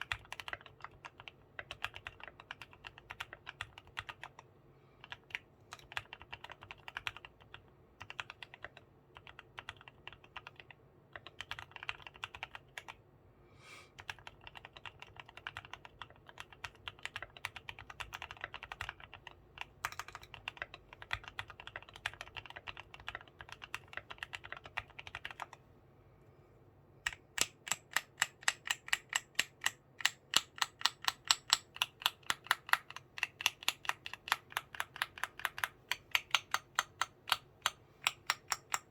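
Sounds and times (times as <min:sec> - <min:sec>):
mechanical keyboard typing: 0:00.0 - 0:13.0, 0:14.0 - 0:25.6, 0:27.0 - 0:38.9.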